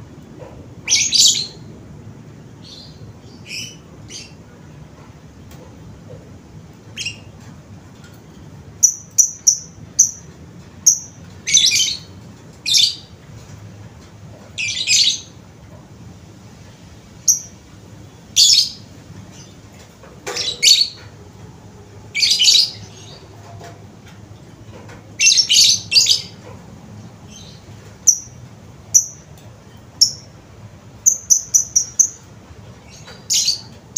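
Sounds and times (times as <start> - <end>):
bird chirping and squawking: 0.9 - 1.6, 20.3 - 21.0, 22.1 - 23.3, 25.2 - 26.4.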